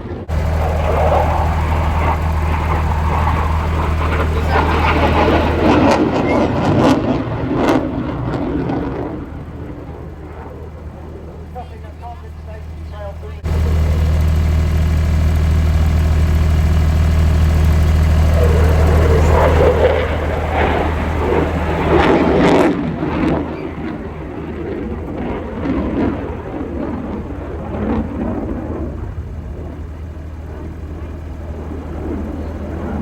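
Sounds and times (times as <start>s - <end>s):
aircraft engine drone: 0.0s - 33.0s
uneven rumble: 0.0s - 33.0s.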